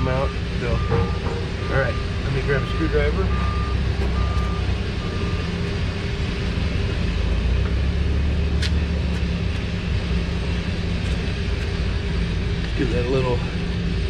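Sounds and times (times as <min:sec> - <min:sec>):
vehicle engine rumble: 0:00.0 - 0:14.0
backup alarm beeping: 0:00.1 - 0:05.6.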